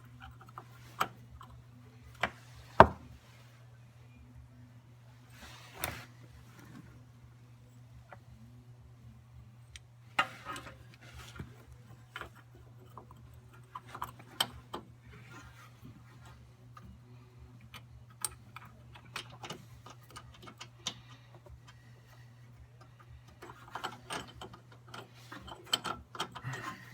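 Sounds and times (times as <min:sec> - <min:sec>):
steady low hum: 0:00.0 - 0:26.9
metallic clicks and scrapes: 0:10.1 - 0:17.0, 0:17.6 - 0:26.9.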